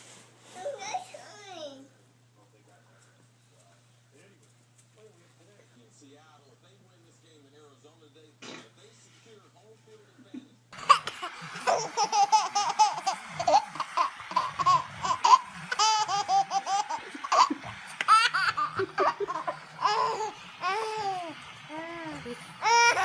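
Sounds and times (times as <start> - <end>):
baby laughing and squealing: 10.8 - 23.0.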